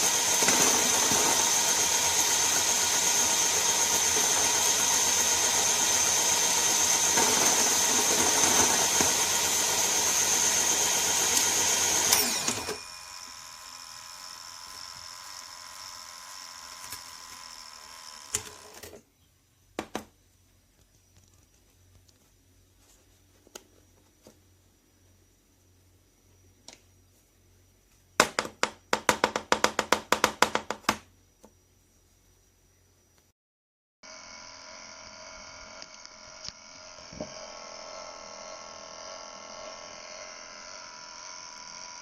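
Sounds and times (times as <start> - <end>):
coffee grinder whining: 0.0 - 19.0, 34.0 - 42.0
faint steady hum: 12.1 - 28.2.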